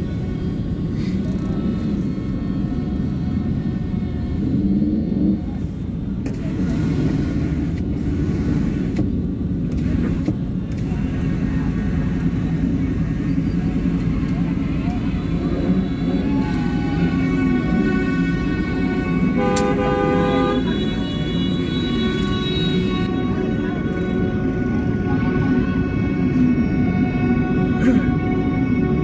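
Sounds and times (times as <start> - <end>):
street traffic rumble: 0.0 - 29.0
faint voices: 9.6 - 19.4, 20.2 - 29.0.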